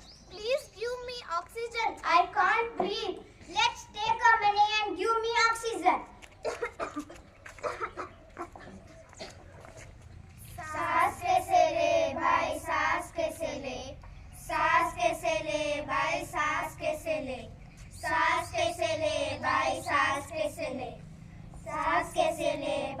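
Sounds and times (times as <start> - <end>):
child singing: 10.4 - 21.0, 21.6 - 23.0.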